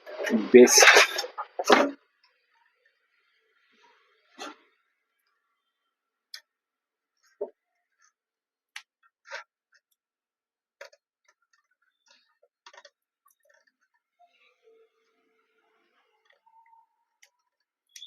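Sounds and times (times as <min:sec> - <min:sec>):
computer parts clicking and tapping: 0:10.8 - 0:14.1.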